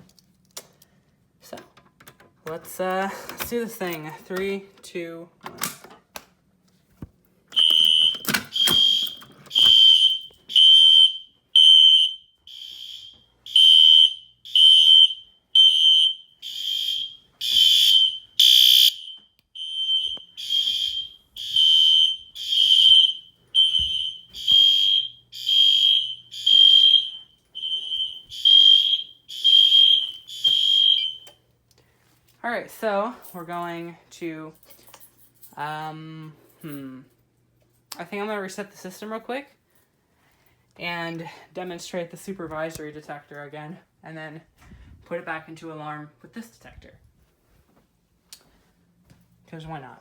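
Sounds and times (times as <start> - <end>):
fire alarm horn pulsing: 7.5 - 31.4.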